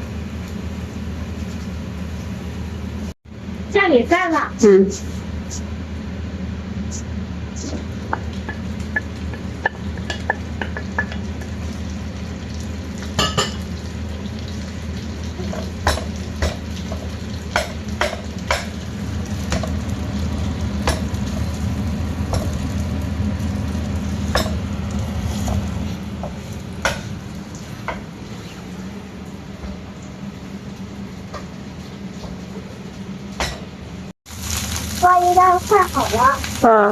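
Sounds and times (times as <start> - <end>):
food sizzling: 7.6 - 33.2, 34.3 - 36.9.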